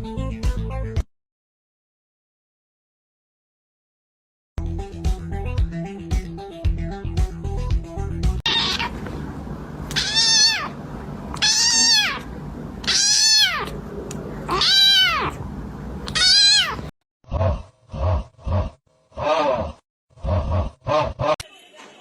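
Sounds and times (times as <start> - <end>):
cat meowing: 8.5 - 9.1, 9.9 - 13.8, 14.5 - 15.4, 16.0 - 16.9.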